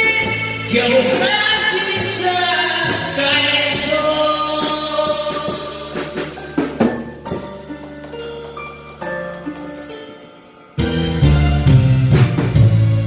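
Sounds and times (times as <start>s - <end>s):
person singing: 0.0s - 6.8s
drum kit: 0.0s - 13.0s
keyboard: 0.0s - 13.0s.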